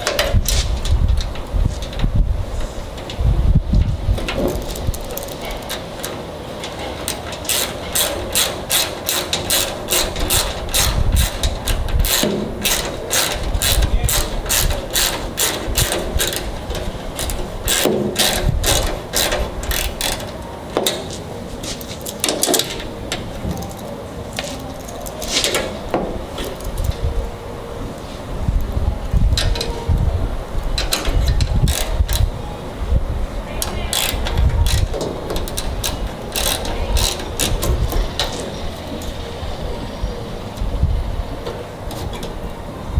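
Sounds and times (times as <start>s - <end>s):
wind rumble on microphone: 0.0s - 5.8s, 8.0s - 21.4s, 22.4s - 42.9s
ratchet clicking: 0.0s - 21.2s, 21.8s - 23.8s, 29.2s - 32.4s, 33.6s - 39.2s.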